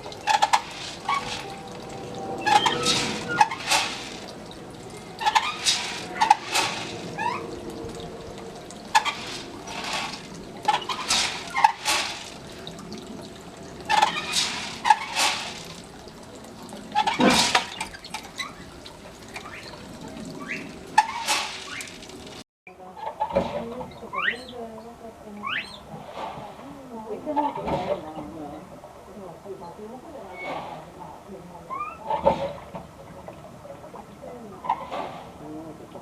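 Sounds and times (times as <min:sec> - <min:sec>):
water splashing and pouring: 0:00.0 - 0:22.4, 0:30.4 - 0:36.0.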